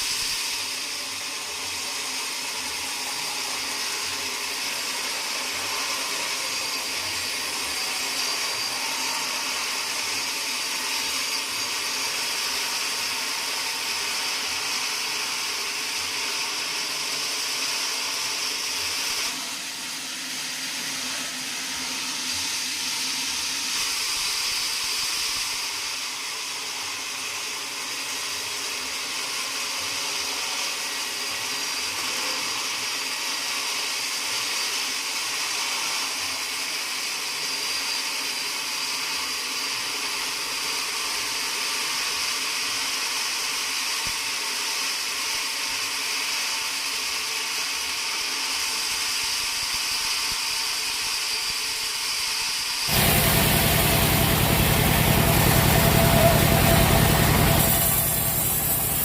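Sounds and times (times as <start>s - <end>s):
sawmill machinery whining: 0.0s - 17.4s, 50.7s - 59.0s
deep machine hum: 52.9s - 59.0s.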